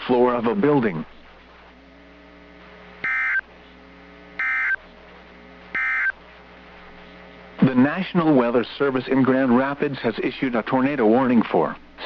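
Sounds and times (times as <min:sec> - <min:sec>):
faint steady hum: 0:00.0 - 0:12.0
warbling data tone bursts: 0:03.0 - 0:03.5, 0:04.4 - 0:04.8, 0:05.7 - 0:06.2.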